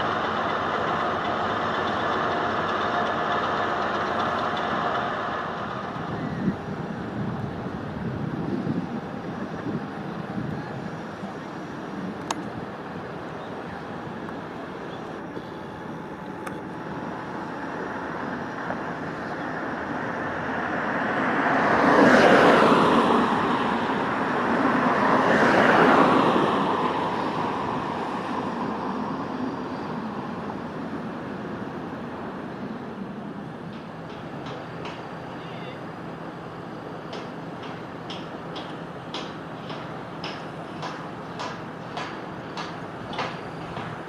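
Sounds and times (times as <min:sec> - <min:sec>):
steady traffic noise: 0:00.0 - 0:44.0
vehicles passing close by: 0:00.0 - 0:44.0.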